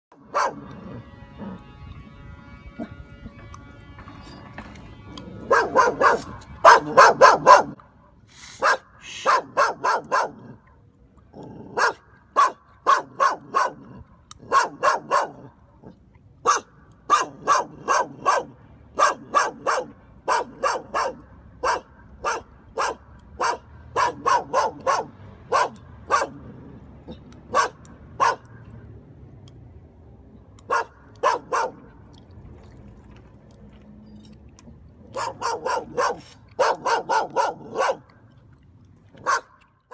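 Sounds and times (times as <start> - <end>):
puppy crunching on chew: 30.6 - 39.9.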